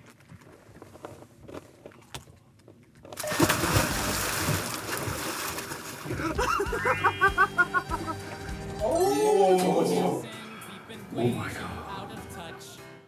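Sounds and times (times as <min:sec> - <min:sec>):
loud splash into water: 0:03.2 - 0:06.2
water sloshing: 0:03.2 - 0:06.7.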